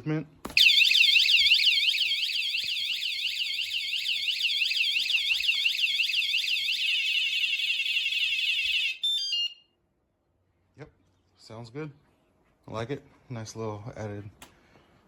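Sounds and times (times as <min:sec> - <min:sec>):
short falling beeps: 0:00.6 - 0:01.9
motorcycle alarm siren warbling: 0:00.6 - 0:09.6.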